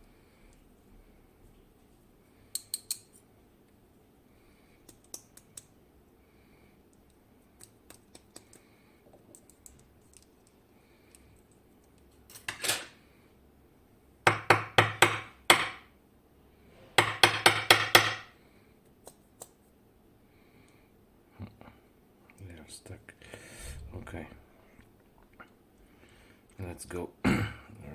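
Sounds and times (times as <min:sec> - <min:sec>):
short metal scrape: 0:16.6 - 0:17.0.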